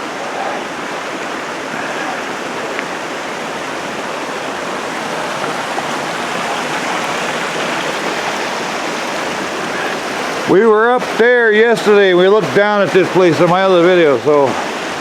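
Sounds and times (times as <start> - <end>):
river water rushing: 0.0 - 15.0.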